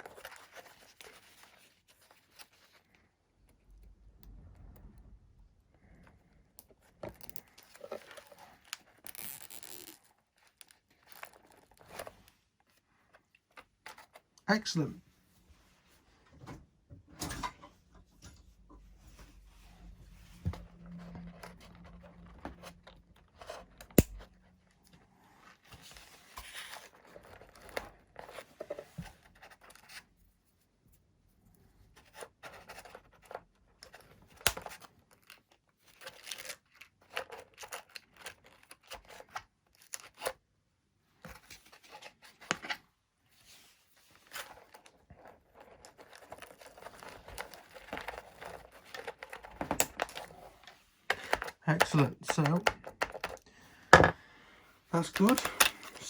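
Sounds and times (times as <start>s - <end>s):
scratching and rustling of cables: 0.0s - 14.5s, 15.4s - 53.5s, 54.8s - 56.0s.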